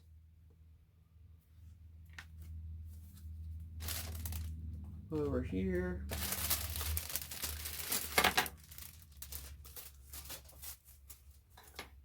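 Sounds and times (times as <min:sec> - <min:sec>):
plastic packaging crinkling: 0:03.8 - 0:04.6, 0:06.1 - 0:11.9
sharp plastic crackle: 0:03.8 - 0:04.9, 0:06.0 - 0:12.0.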